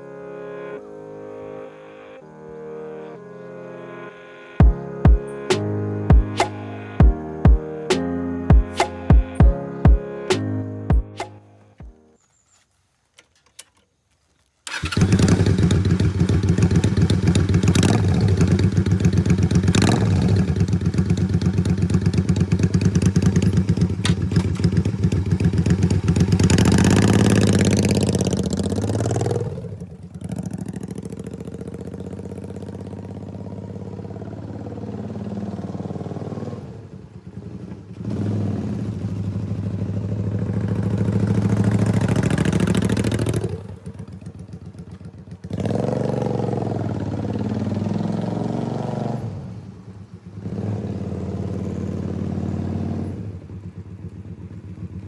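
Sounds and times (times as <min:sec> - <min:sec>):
motorcycle engine revving: 0:14.7 - 0:55.0.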